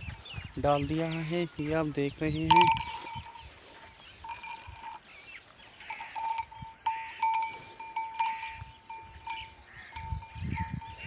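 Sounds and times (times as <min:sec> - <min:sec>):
small bell ringing: 0:01.6 - 0:05.0, 0:05.8 - 0:11.0.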